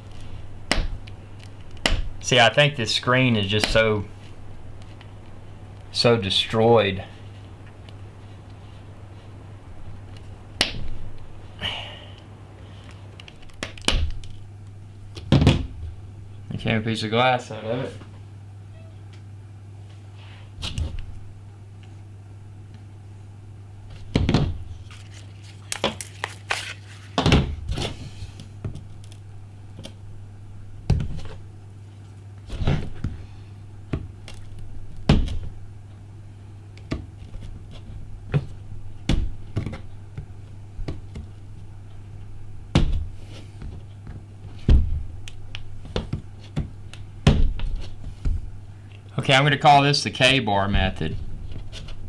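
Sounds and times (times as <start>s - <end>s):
low hum: 0.0s - 19.7s.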